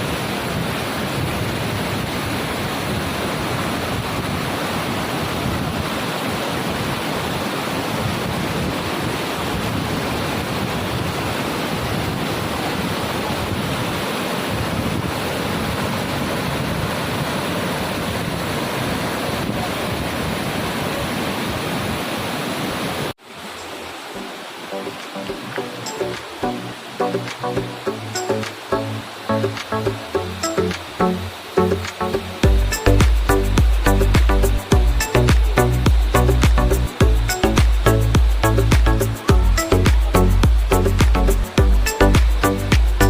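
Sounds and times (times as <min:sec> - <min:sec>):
wind rumble on microphone: 0:00.0 - 0:22.1
waterfall rushing: 0:00.0 - 0:43.0.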